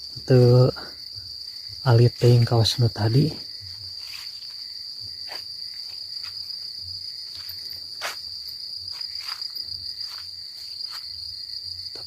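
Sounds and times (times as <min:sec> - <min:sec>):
insects chirring: 0:00.0 - 0:12.0.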